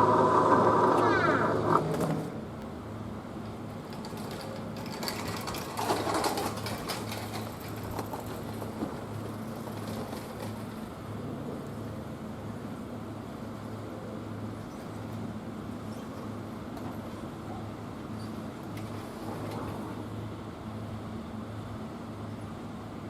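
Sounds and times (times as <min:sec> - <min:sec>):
electric train running past: 0:00.0 - 0:23.0
train wheel clicks: 0:03.8 - 0:10.7.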